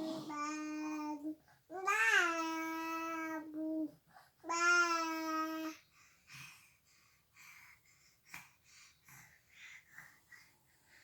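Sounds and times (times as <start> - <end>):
soft noisy breathing: 3.6 - 4.5, 5.6 - 11.0.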